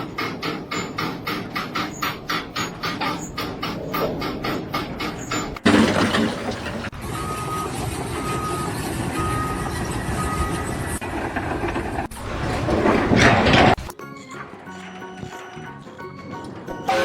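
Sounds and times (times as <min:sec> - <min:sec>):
heavy vehicle engine running: 0:00.0 - 0:12.3
reversing alarm beeps: 0:07.1 - 0:10.9.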